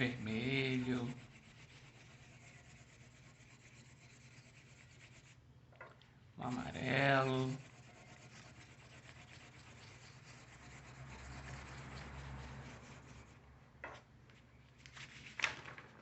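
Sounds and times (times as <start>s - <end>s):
faint rubbing and scraping: 0.0s - 5.4s, 6.5s - 13.4s.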